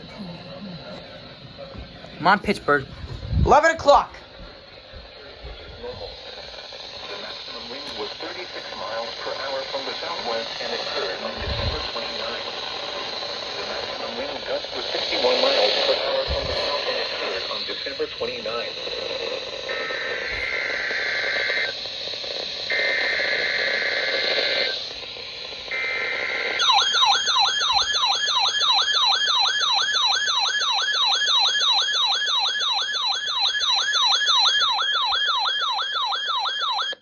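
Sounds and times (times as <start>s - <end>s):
radio hiss: 0.0s - 28.0s
warbling electronic alert siren: 19.7s - 37.0s.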